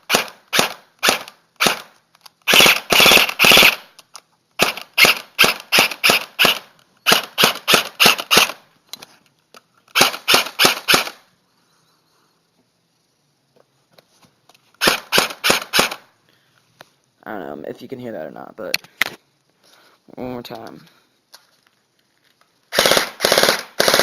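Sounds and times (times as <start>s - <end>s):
airsoft rifle dry-firing: 0.0s - 4.0s, 4.6s - 8.6s, 9.9s - 11.2s, 14.8s - 16.1s, 22.7s - 24.0s.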